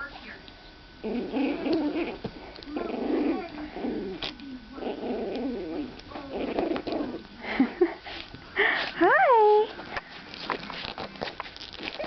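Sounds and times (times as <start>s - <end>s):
puppy whining and growling: 1.0s - 7.9s, 10.9s - 12.0s.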